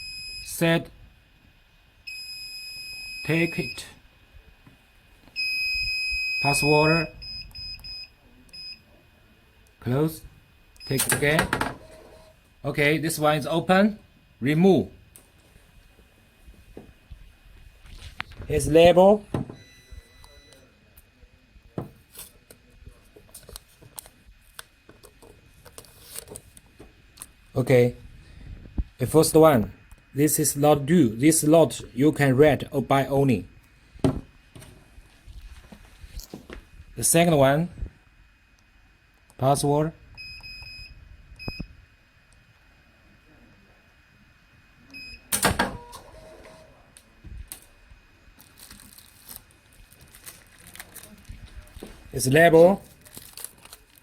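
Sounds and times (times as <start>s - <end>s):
faint steady high tone: 2.1s - 4.0s, 5.4s - 9.0s, 19.5s - 21.4s
keypad beeps: 5.4s - 8.8s, 19.6s - 20.6s
small objects clicking and rubbing: 52.8s - 54.0s.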